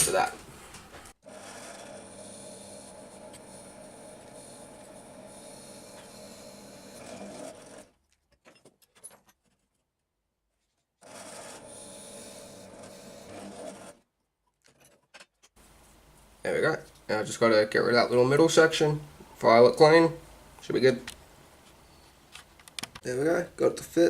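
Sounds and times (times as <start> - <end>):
tool rasping wood: 1.2 - 7.9, 11.0 - 14.0.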